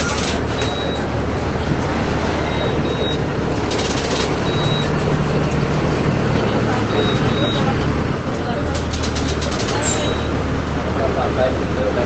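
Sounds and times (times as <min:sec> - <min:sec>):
diesel bus engine drone: 0:00.0 - 0:12.0.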